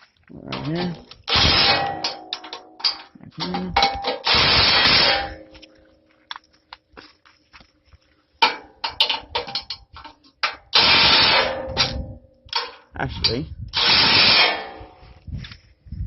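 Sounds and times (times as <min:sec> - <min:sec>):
impact wrench burst: 0:01.2 - 0:02.2, 0:04.1 - 0:05.4, 0:10.7 - 0:12.0, 0:13.8 - 0:15.0
metal tools clinking: 0:08.4 - 0:10.8.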